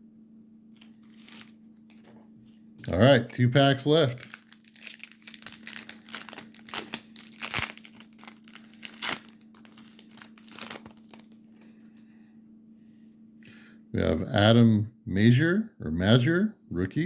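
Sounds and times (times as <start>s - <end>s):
card pack wrapper tearing and crinkling: 0.8s - 2.1s, 2.8s - 11.5s.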